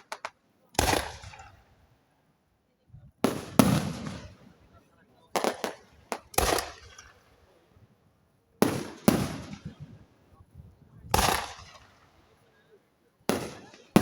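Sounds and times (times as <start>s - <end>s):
firework shells bursting: 0.0s - 1.6s.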